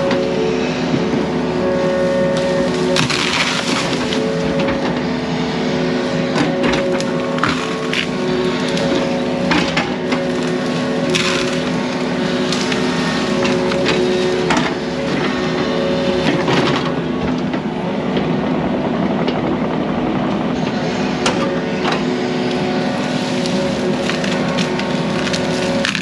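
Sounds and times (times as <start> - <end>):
diesel engine running: 0.0 - 26.0
wood cracking and snapping: 2.1 - 5.2, 6.3 - 17.6, 21.2 - 26.0.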